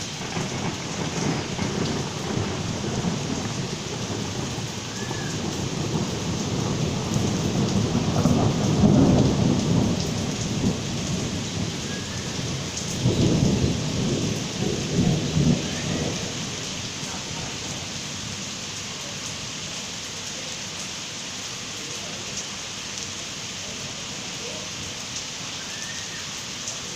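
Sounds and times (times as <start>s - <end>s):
low rolls of thunder: 0.0s - 18.5s
rain falling steadily: 0.0s - 26.9s.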